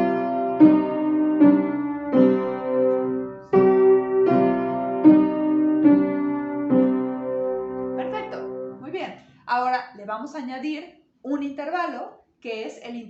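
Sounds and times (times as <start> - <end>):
piano playing slow melody: 0.0 - 8.8.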